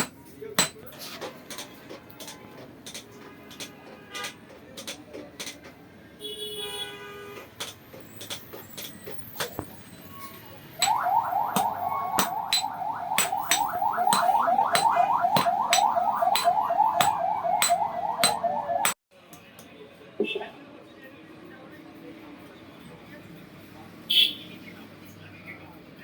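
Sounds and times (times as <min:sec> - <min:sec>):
sharp metallic knocks: 0:00.0 - 0:00.8, 0:10.8 - 0:19.0
rhythmic rising squeal: 0:10.8 - 0:19.0.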